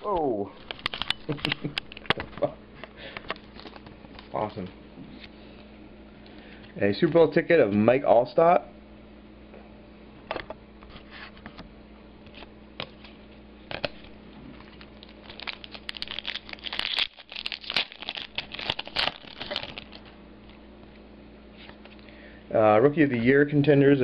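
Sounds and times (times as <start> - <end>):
cards clicking and rustling: 3.2 - 4.6, 13.7 - 20.1
wrapper crinkling and tearing: 14.5 - 20.2.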